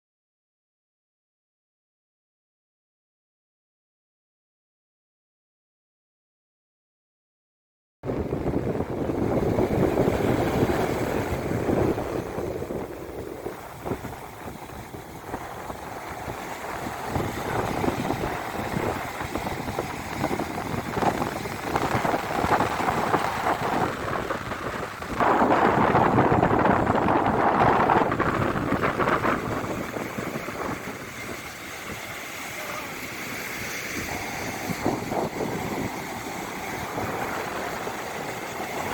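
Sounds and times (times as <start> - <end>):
wind buffeting microphone: 8.0 - 38.9
sea waves breaking on beach: 8.1 - 38.9.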